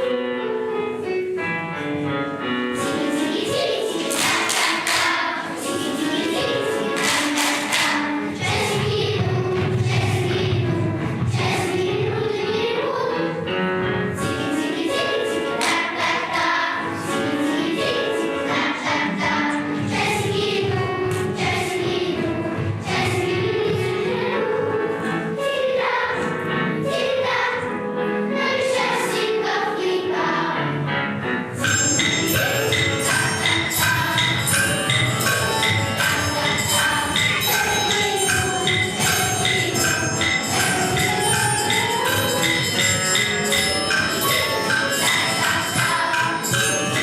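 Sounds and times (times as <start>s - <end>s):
choir singing with accompaniment: 1.0s - 47.0s
high bell-like chimes: 31.6s - 47.0s.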